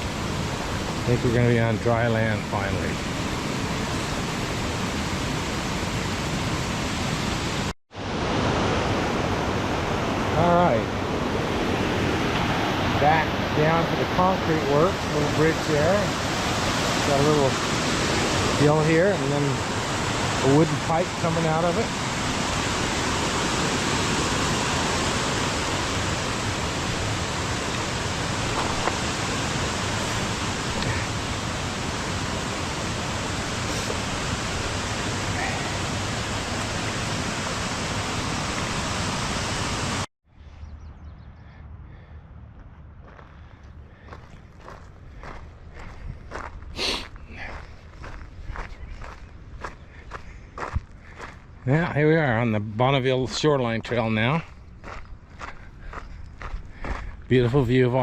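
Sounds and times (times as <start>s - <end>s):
creek rushing: 0.0s - 40.1s.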